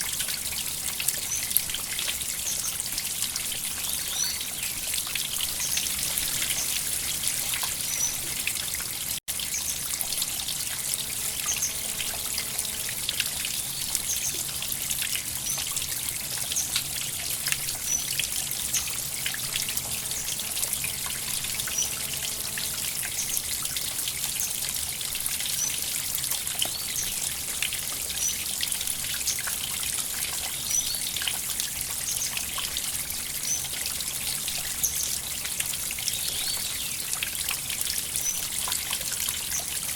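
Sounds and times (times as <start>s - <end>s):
river water flowing: 3.0s - 25.7s.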